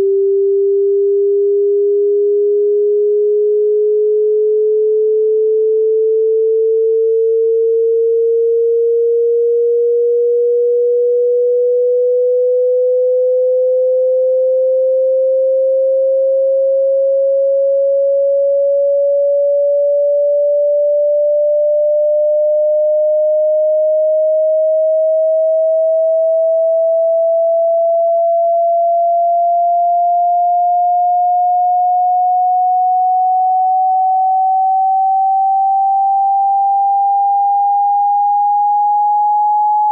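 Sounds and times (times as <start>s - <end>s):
sine tone rising in pitch: 0.0s - 39.9s.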